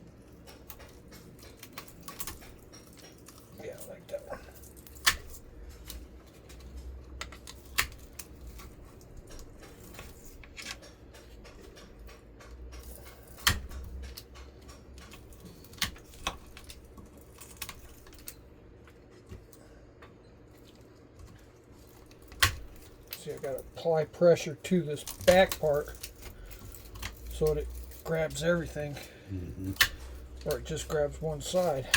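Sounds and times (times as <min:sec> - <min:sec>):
metallic clicks of hand tools: 0:00.4 - 0:18.4.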